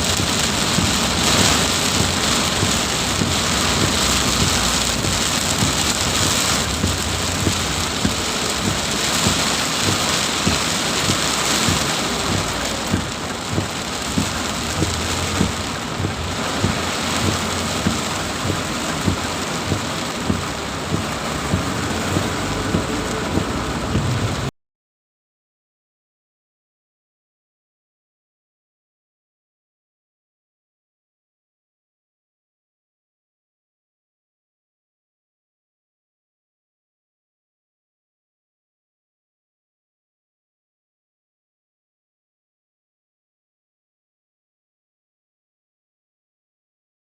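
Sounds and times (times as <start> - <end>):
heavy rain pouring: 0.0 - 24.5.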